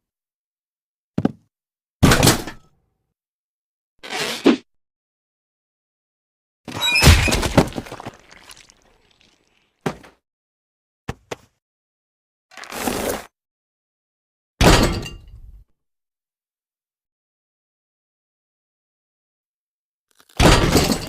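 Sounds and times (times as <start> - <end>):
cartoon crash: 6.7 - 8.0.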